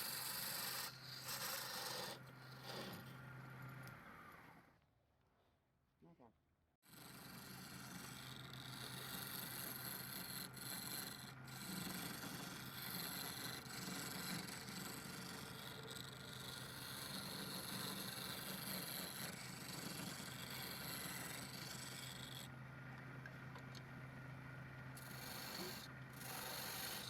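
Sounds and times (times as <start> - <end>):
tool scraping spinning wood: 0.0 - 4.0, 7.0 - 22.5, 25.0 - 27.0.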